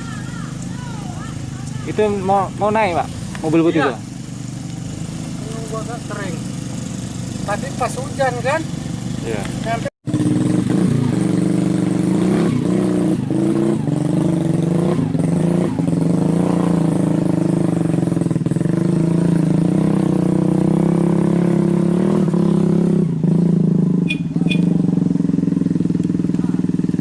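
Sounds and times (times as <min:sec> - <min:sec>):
vehicle engine running: 0:00.0 - 0:27.0
short high chirps: 0:24.0 - 0:24.7.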